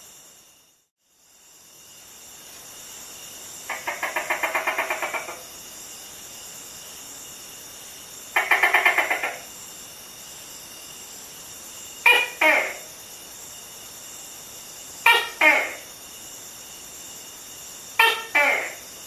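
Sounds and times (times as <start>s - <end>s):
steady high hiss: 0.0s - 19.0s.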